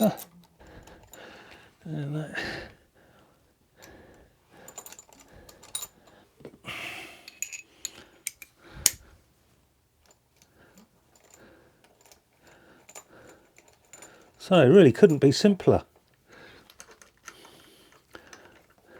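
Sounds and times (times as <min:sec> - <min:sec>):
metallic clicks of tools and bolts: 0:00.0 - 0:01.2, 0:04.7 - 0:06.2, 0:07.2 - 0:09.0, 0:10.0 - 0:14.4, 0:16.6 - 0:18.8.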